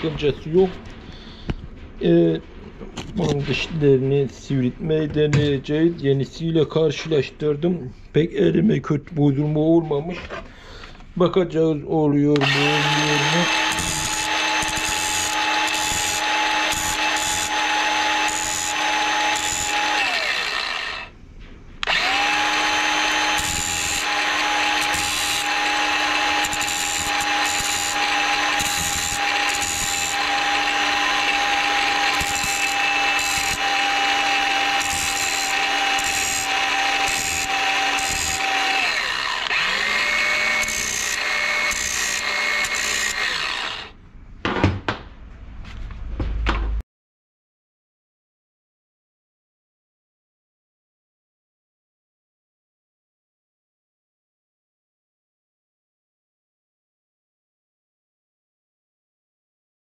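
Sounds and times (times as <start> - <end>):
electric grinder grinding metal: 12.4 - 21.1, 21.8 - 44.0.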